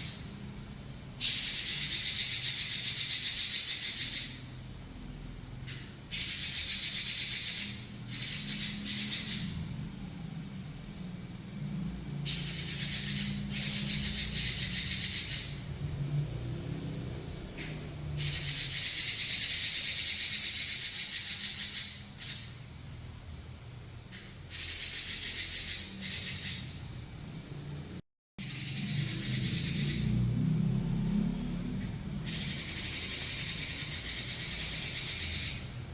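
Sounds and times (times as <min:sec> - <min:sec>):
bird singing fast trills: 0:00.0 - 0:04.7, 0:06.0 - 0:10.8, 0:12.0 - 0:15.9, 0:17.2 - 0:22.7, 0:24.4 - 0:26.9, 0:28.4 - 0:30.4, 0:32.2 - 0:35.9.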